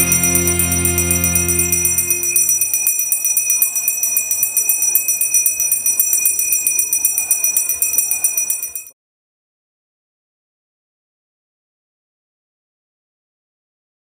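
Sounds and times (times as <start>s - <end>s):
bell ringing rapidly: 0.0s - 8.9s.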